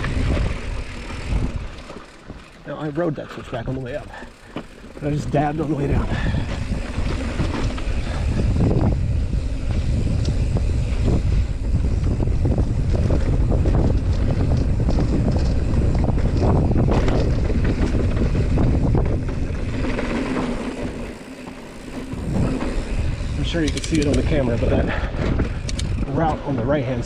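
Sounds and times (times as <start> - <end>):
wind rumbling on microphone: 0.0 - 2.5, 4.9 - 27.0
bike rattling over bumps: 0.0 - 27.0.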